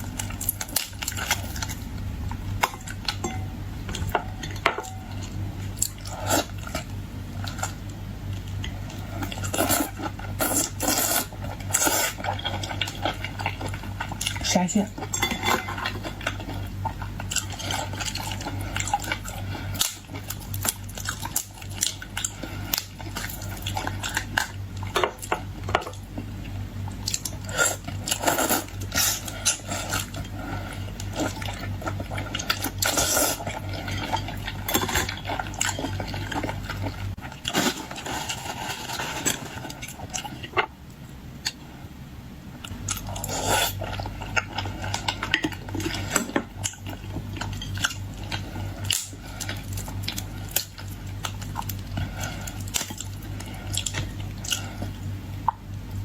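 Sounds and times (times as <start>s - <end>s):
low steady hum: 0.0s - 56.0s
dishes and cutlery clinking: 2.6s - 5.1s, 15.0s - 16.4s.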